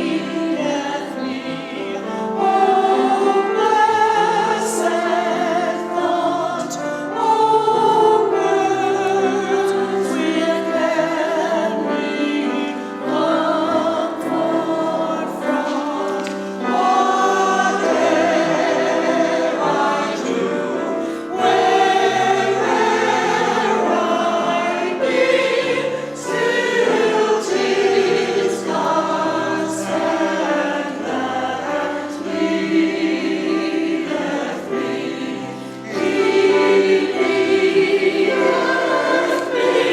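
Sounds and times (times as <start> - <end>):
church choir singing: 0.0 - 39.9.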